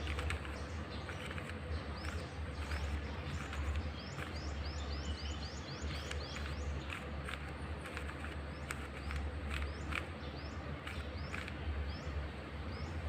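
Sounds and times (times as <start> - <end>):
puzzle cube plastic clicks: 0.0 - 4.4, 5.9 - 10.1, 10.8 - 11.6
bird chirping: 0.0 - 13.0
steady low hum: 0.0 - 13.0.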